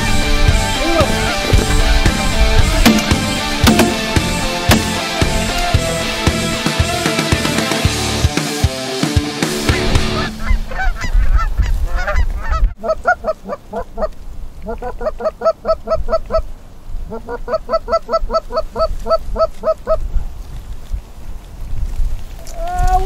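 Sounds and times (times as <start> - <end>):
music: 0.0 - 10.5
goose honking: 9.7 - 14.1.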